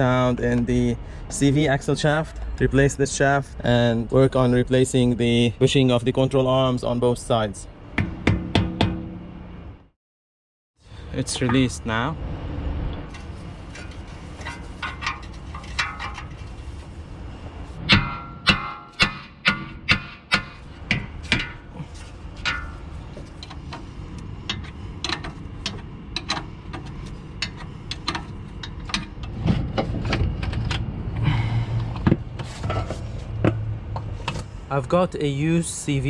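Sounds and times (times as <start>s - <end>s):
hammering on metal: 8.0s - 9.3s, 17.8s - 21.8s
steady low hum: 10.8s - 34.8s.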